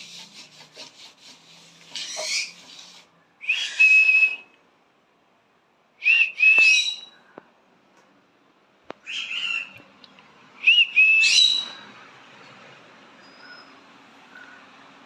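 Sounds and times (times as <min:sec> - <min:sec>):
parrot scratchy noises: 0:00.0 - 0:03.8
parrot shrill whistled calls: 0:02.0 - 0:02.6, 0:03.4 - 0:04.4, 0:06.0 - 0:07.2, 0:09.0 - 0:09.8, 0:10.8 - 0:11.9.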